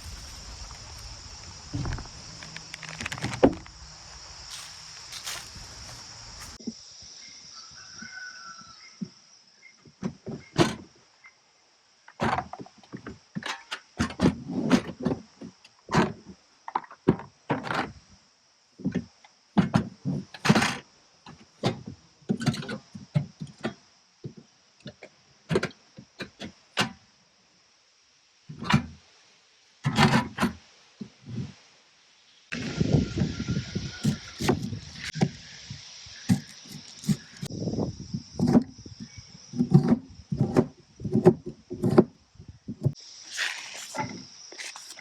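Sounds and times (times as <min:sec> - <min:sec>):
faint high hiss: 0:00.0 - 0:07.6.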